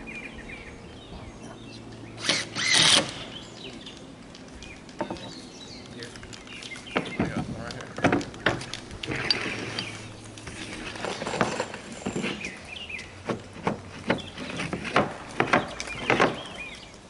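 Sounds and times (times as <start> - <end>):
bird chirping: 0.0 - 7.7, 11.0 - 13.2, 14.0 - 14.7, 15.4 - 17.0
knocks and thuds: 6.9 - 9.2.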